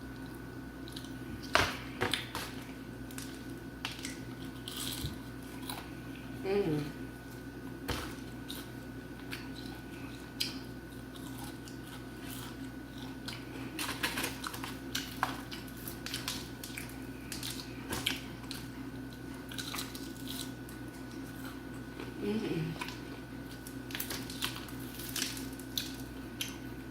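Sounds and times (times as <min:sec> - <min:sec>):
steady low hum: 0:00.0 - 0:26.9
chewing: 0:00.2 - 0:06.3, 0:07.3 - 0:26.7.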